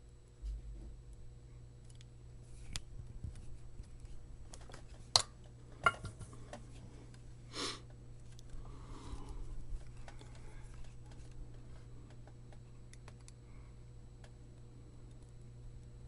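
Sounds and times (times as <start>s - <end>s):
steady low hum: 0.0s - 16.0s
soldering clicks and taps: 11.5s - 13.4s.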